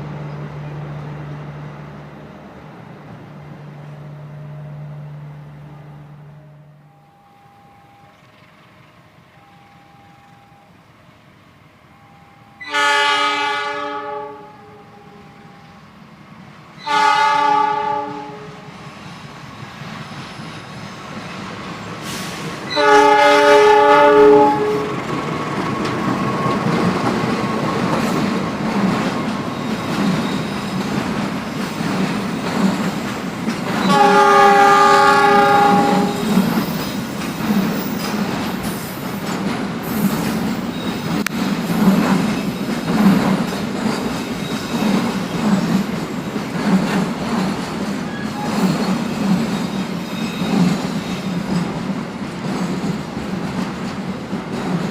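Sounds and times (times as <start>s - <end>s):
train rumbling past: 0.0s - 54.9s
train horn blasts: 11.9s - 15.8s, 16.8s - 18.7s, 22.7s - 25.0s, 33.8s - 36.4s
wheels clacking on rail joints: 19.8s - 54.9s.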